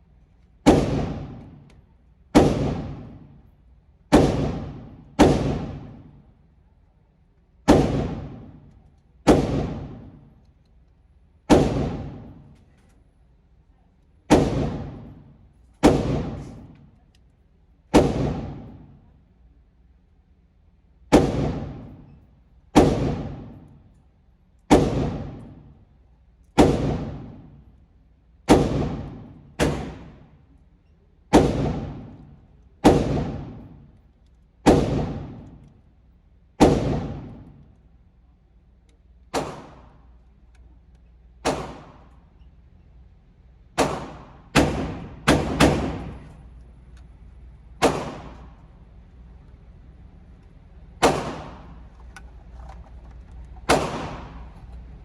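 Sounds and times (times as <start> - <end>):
pistol shots echoing: 0.6 - 1.6, 2.3 - 3.4, 4.1 - 6.2, 7.7 - 10.3, 11.5 - 12.6, 14.3 - 16.8, 17.9 - 19.0, 21.1 - 22.2, 22.8 - 23.8, 24.7 - 25.8, 26.6 - 27.6, 28.5 - 30.3, 31.3 - 34.0, 34.6 - 35.7, 36.6 - 37.6, 39.3 - 40.0, 41.4 - 42.2, 43.8 - 46.4, 47.8 - 48.6, 51.0 - 51.9, 53.6 - 54.6.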